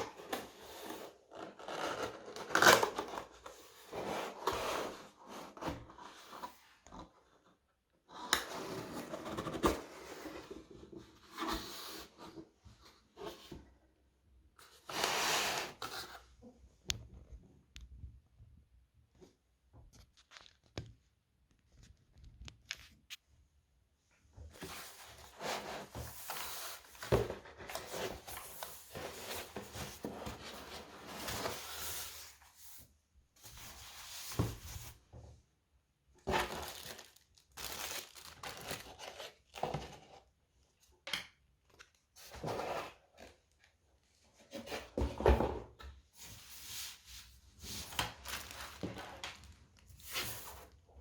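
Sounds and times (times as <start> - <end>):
packaging rustling and crinkling: 36.3 - 39.7, 46.4 - 50.7.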